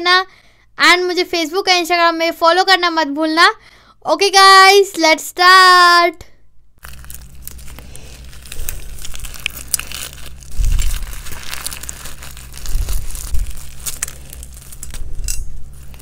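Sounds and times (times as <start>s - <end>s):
crinkling and crackling clicks: 6.8s - 16.0s
food tearing: 6.8s - 16.0s.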